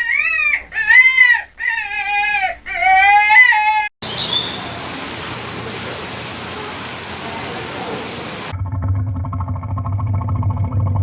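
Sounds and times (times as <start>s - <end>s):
steady hiss: 4.0s - 8.5s.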